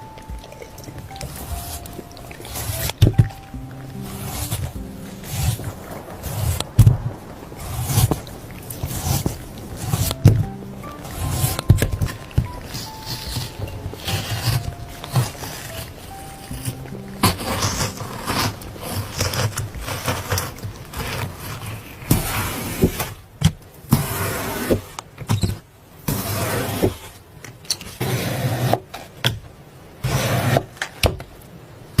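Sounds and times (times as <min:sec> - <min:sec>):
slime squelching: 0:00.0 - 0:23.1.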